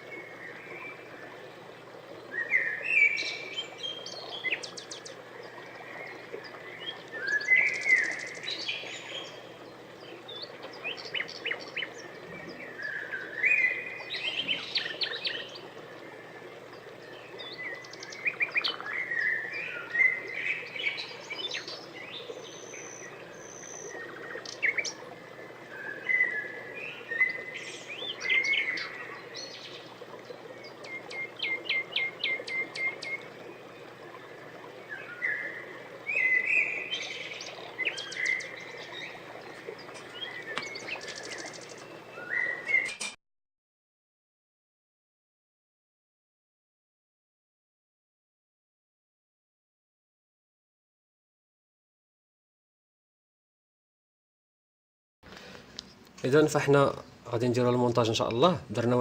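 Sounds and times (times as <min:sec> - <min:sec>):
small birds chirping: 0:00.0 - 0:43.2, 0:55.3 - 0:59.0.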